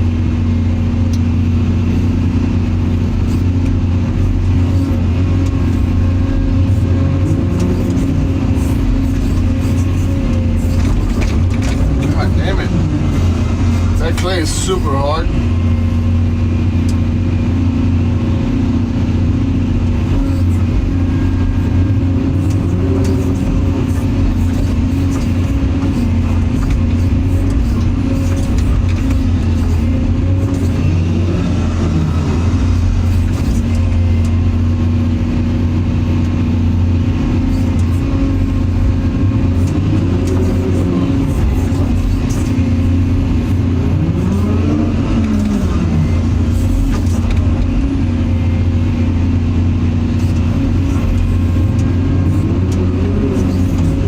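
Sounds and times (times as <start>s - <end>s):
excavator diesel engine running: 0.0s - 54.0s
hydraulic whine: 0.0s - 54.0s.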